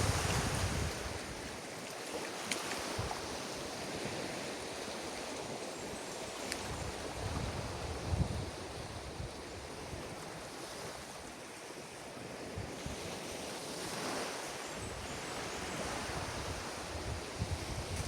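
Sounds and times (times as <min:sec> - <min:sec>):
ocean surf breaking: 0:00.0 - 0:01.4
wind buffeting microphone: 0:00.0 - 0:01.5, 0:06.7 - 0:10.1, 0:15.7 - 0:18.0.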